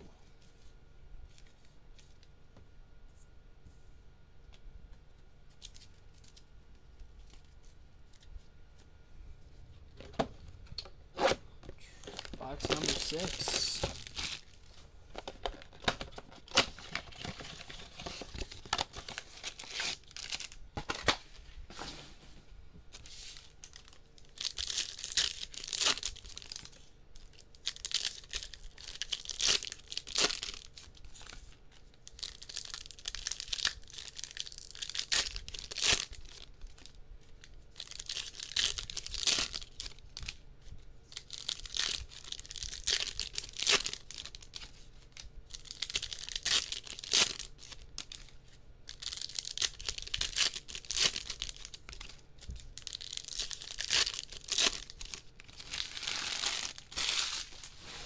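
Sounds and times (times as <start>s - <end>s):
packaging tearing and crinkling: 12.0s - 21.2s, 22.9s - 58.0s.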